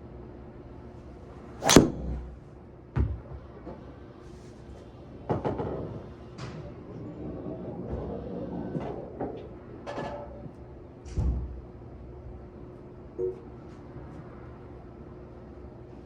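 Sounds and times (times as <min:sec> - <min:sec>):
steady low hum: 0:00.0 - 0:02.9.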